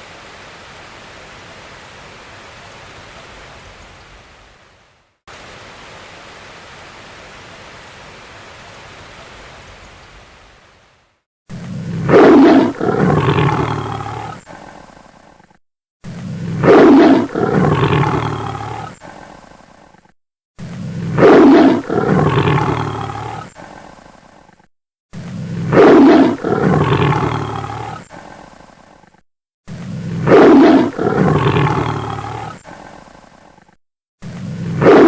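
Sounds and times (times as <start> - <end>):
tiger roaring: 11.5 - 14.8, 16.0 - 24.5, 25.1 - 35.0.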